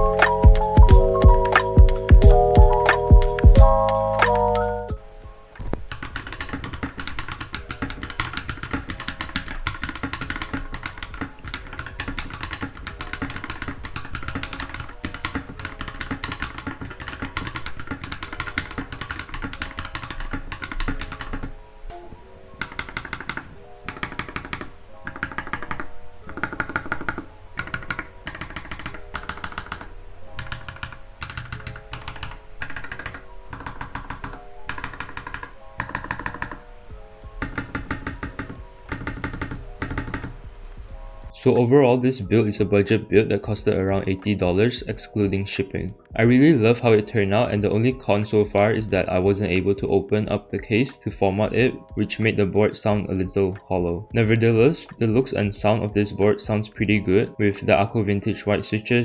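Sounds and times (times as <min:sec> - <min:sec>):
mechanical keyboard typing: 0:00.0 - 0:04.9, 0:05.8 - 0:21.5, 0:22.6 - 0:36.7, 0:37.4 - 0:40.3
background music: 0:00.0 - 0:59.0.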